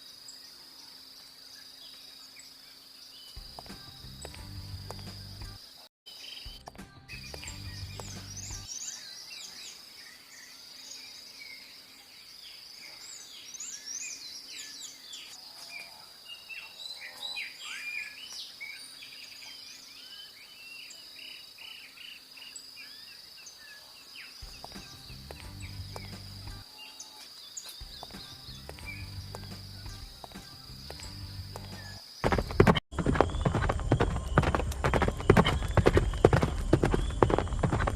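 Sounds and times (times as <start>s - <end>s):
birds chirping: 0.0s - 37.9s
high-pitched insect drone: 24.2s - 32.6s.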